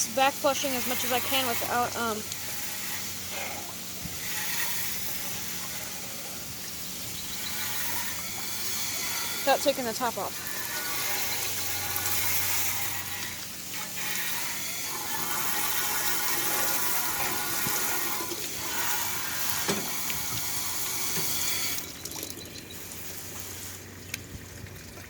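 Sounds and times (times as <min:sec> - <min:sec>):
garden hose spraying water: 0:00.0 - 0:25.0.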